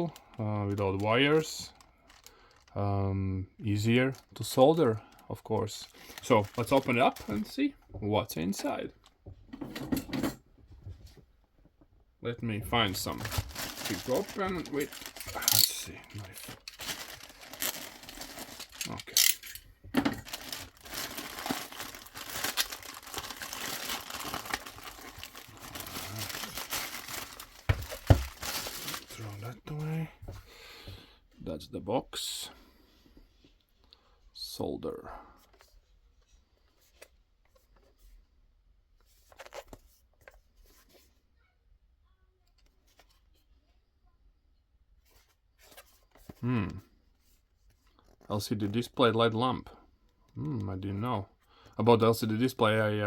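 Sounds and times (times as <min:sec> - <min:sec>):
wrapping tearing and crinkling: 0:00.0 - 0:02.8, 0:05.6 - 0:07.6, 0:12.9 - 0:19.4, 0:20.1 - 0:29.6
knife cutting package: 0:13.1 - 0:19.2
cardboard box taps and rustles: 0:27.6 - 0:28.5.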